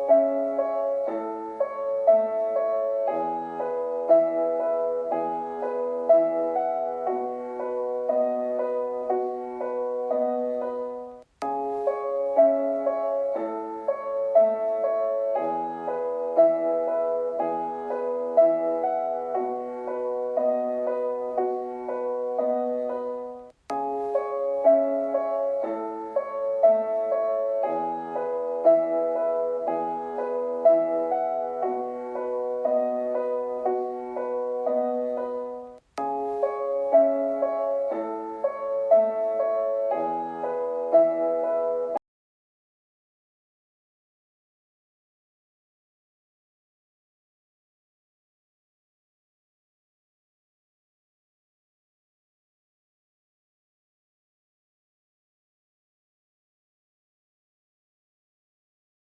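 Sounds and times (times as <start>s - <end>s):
solo piano melody: 0.0s - 42.0s.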